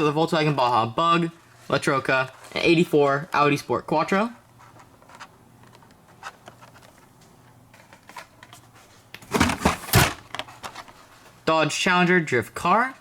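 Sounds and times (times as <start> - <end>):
packages rustling and clattering: 4.2 - 11.4.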